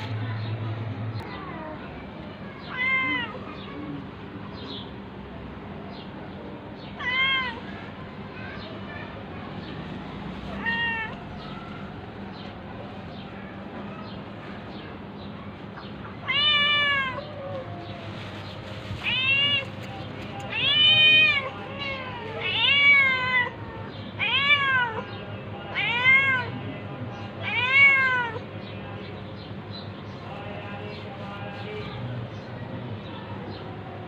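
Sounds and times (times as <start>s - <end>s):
cat meowing: 2.7s - 3.4s, 7.0s - 7.6s, 10.5s - 11.6s, 16.2s - 17.4s, 20.5s - 23.6s, 24.2s - 25.0s, 25.7s - 26.5s, 27.4s - 28.4s.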